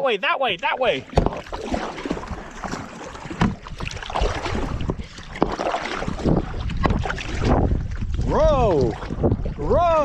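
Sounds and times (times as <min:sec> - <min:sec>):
paddles splashing in water: 0:00.4 - 0:10.0
wind buffeting microphone: 0:03.2 - 0:10.0.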